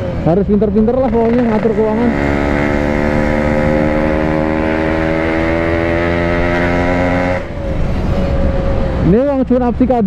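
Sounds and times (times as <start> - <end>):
two-stroke motorcycle engine running: 0.6 - 7.4.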